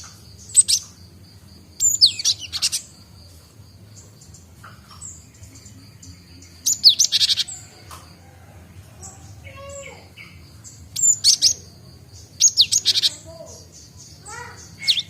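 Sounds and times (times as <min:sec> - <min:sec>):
bird sharp high chirps: 0:00.0 - 0:01.0, 0:01.8 - 0:03.0, 0:04.0 - 0:07.7, 0:09.1 - 0:15.0.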